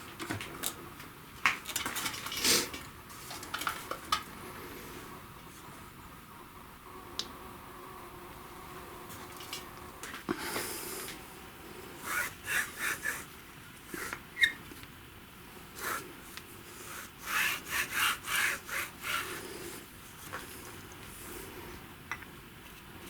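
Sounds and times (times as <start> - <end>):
hand tool scraping: 12.0 - 14.6, 16.7 - 19.8.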